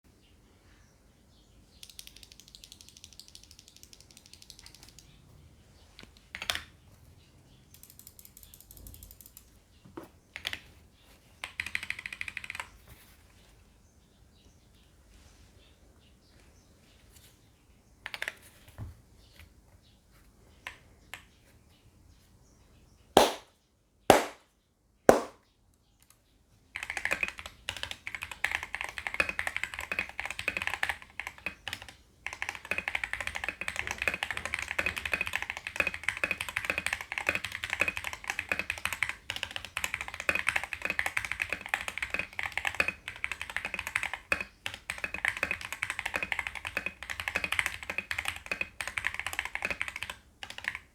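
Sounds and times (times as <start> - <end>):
mechanical keyboard typing: 1.8 - 5.2, 7.7 - 9.6, 11.4 - 12.7, 26.8 - 50.9
loud keyboard clacks: 26.8 - 50.9.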